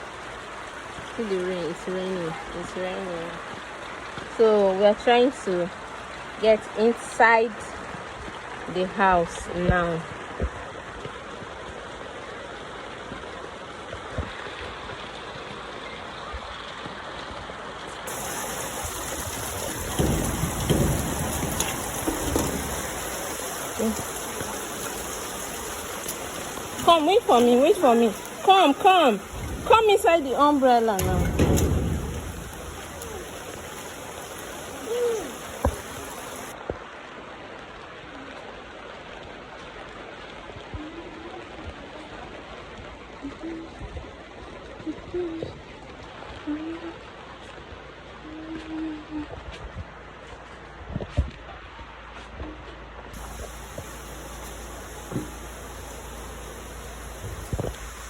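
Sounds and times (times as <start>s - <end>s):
heavy rain pouring: 0.0s - 9.4s, 10.0s - 44.8s, 53.1s - 58.0s
low rumbling bursts: 18.1s - 36.6s, 53.2s - 58.0s.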